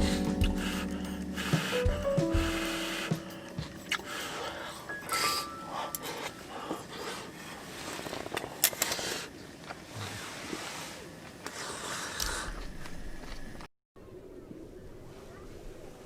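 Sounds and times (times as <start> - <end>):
rustling and scraping of objects: 2.5 - 13.7.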